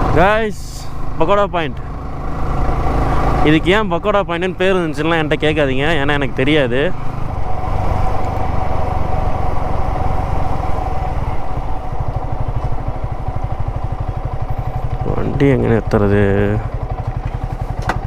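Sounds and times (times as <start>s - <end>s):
motorcycle engine running: 0.0s - 18.0s.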